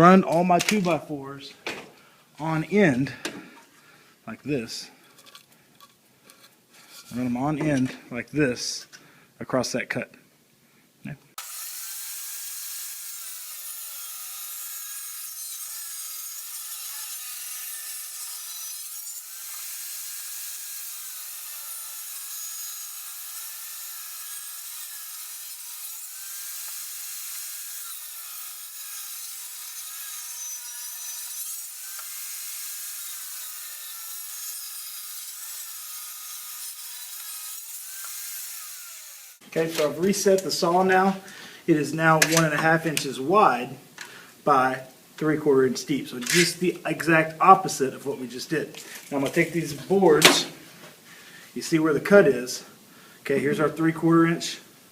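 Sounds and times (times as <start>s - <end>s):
table saw cutting wood: 11.4s - 39.9s.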